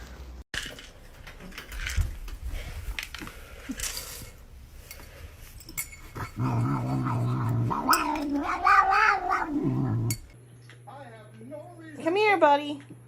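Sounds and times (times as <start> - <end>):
faint clicks and rustles: 0.0 - 6.4
dog growling: 6.2 - 10.3.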